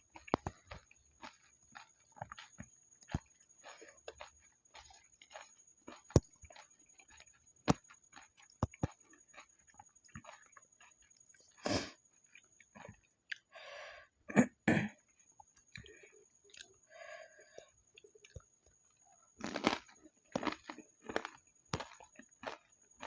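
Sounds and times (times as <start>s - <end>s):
chewing: 0.0s - 13.6s, 15.1s - 23.0s
crisp shells crunching: 19.4s - 22.6s.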